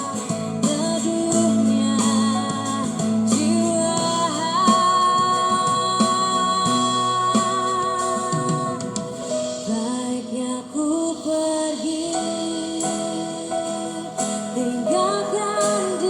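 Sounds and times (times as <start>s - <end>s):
bass: 0.0s - 9.1s
guitar: 0.0s - 16.0s
woman singing a pop ballad: 0.0s - 16.0s.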